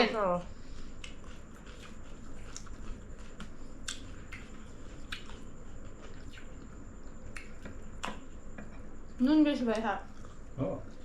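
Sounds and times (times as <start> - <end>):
low room rumble: 0.0 - 11.0
chewing mouth clicks and smacks: 1.0 - 8.2.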